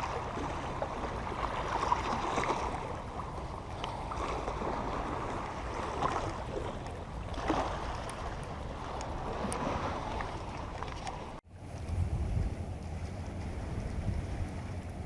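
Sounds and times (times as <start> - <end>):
water washing: 0.0 - 11.4
wind on microphone: 0.0 - 15.0.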